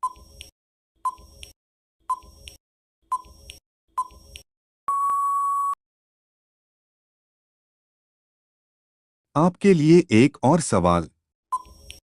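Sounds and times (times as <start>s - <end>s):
long steady beep: 4.9s - 5.8s.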